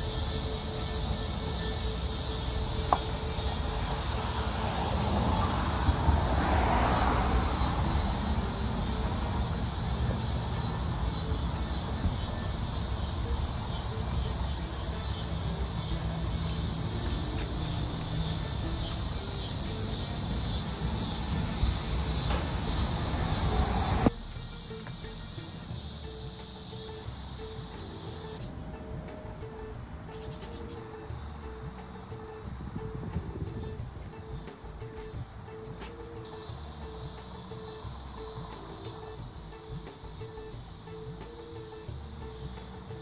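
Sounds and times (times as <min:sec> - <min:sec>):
insects chirping: 0:00.0 - 0:43.0
low steady rumble: 0:07.1 - 0:41.2.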